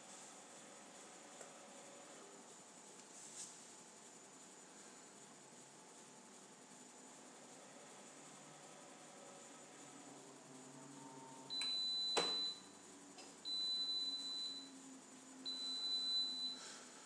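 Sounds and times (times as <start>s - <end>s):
washing machine beeping: 11.0s - 16.7s.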